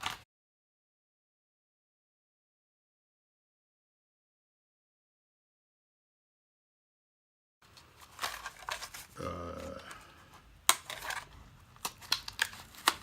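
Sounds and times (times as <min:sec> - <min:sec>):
packaging clicks and crinkles: 0:07.6 - 0:13.0.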